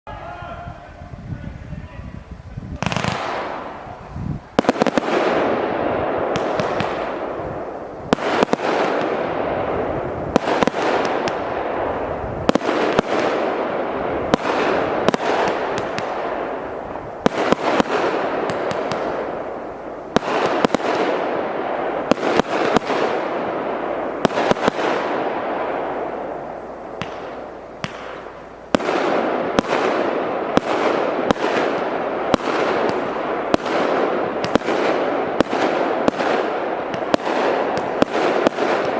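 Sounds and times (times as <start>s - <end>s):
firework pops with hiss: 2.7s - 5.5s, 6.3s - 9.2s, 10.3s - 11.5s, 14.3s - 16.3s, 16.9s - 21.2s, 24.2s - 38.9s.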